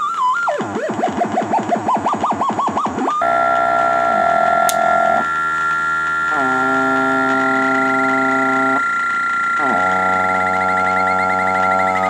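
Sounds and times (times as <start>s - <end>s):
buzzy electronic drone chord: 3.2s - 12.0s.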